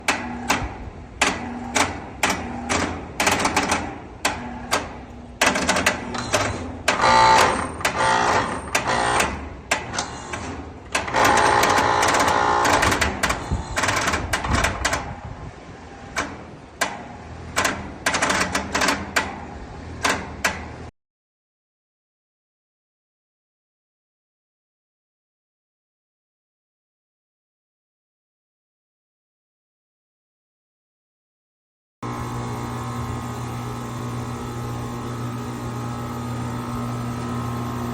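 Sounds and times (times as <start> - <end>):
air conditioner buzzing: 32.0 - 37.9
air conditioner unit clicking: 32.0 - 37.9.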